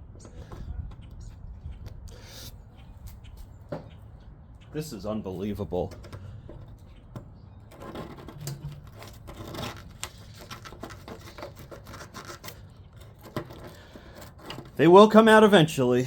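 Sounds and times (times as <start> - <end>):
metal tool clicking and scraping: 7.7 - 14.9.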